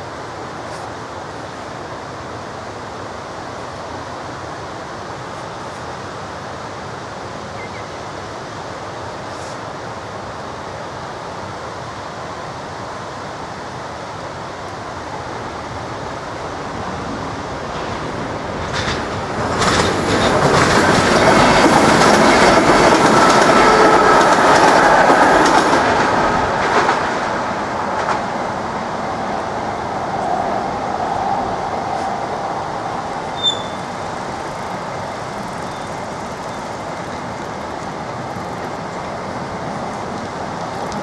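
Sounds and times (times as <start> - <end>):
train passing: 10.2 - 41.0
wheels clicking over rail joints: 17.7 - 27.3.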